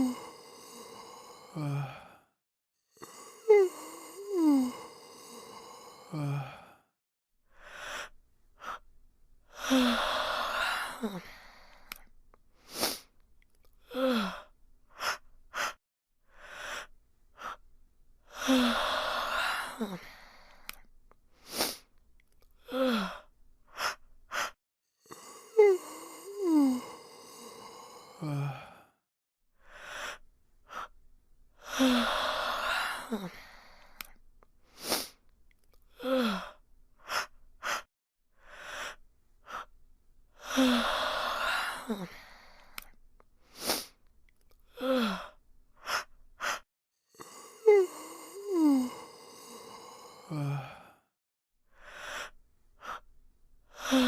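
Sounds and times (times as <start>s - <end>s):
person yawning: 0.0s - 2.2s, 3.0s - 6.8s, 25.3s - 28.8s, 47.2s - 51.0s.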